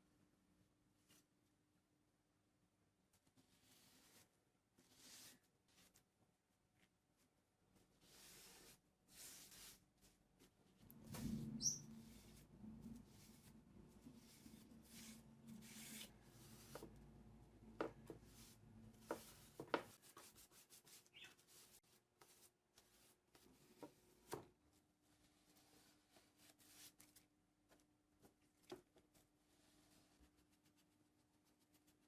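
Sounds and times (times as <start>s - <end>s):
rubbing and handling on wood: 7.8s - 32.0s.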